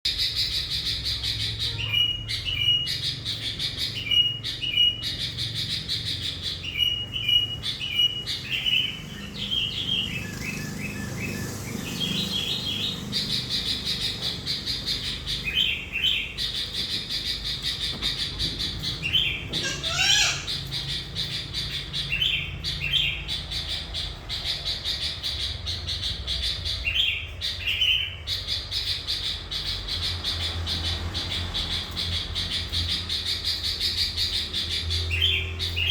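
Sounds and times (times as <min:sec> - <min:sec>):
bird whistled song: 0:00.1 - 0:31.0
bird sweeping call: 0:06.1 - 0:22.4.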